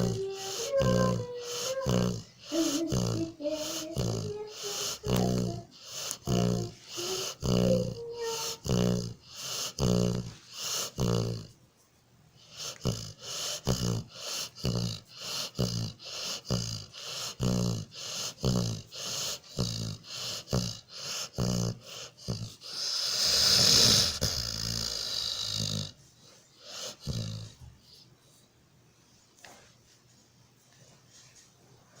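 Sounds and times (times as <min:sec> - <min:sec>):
dog long hissing breath: 0:00.0 - 0:11.5, 0:12.4 - 0:28.4
dog snoring and snorting: 0:00.0 - 0:11.6, 0:12.4 - 0:26.0, 0:26.6 - 0:28.0.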